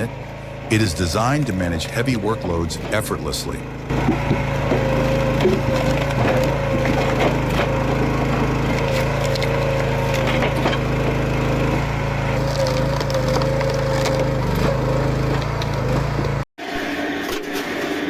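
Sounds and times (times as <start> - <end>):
log splitter engine running: 0.0 - 16.5
wood cracking and splintering: 3.9 - 16.4.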